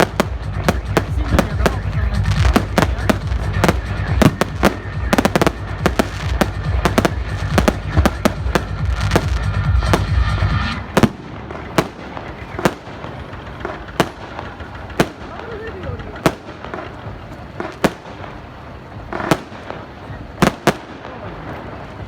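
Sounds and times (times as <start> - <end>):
low rumble: 0.0 - 17.6
fireworks bangs and crackles: 0.0 - 22.0.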